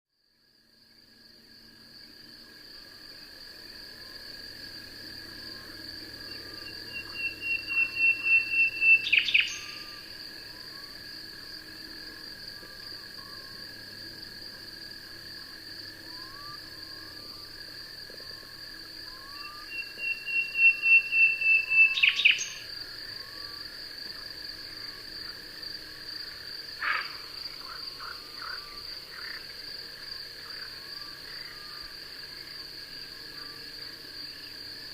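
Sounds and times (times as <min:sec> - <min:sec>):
crickets trilling: 0:00.4 - 0:34.9
rapidly pulsed animal call: 0:26.8 - 0:29.4.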